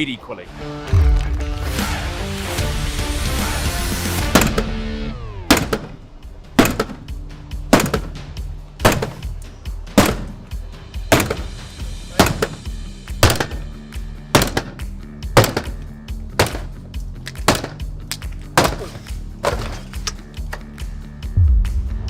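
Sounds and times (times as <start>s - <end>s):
background music: 0.0s - 22.0s
sledgehammer blows on door: 4.2s - 4.8s, 5.5s - 6.0s, 6.6s - 7.1s, 7.7s - 10.5s, 11.1s - 13.7s, 14.3s - 16.8s, 17.4s - 17.8s, 18.6s - 19.8s.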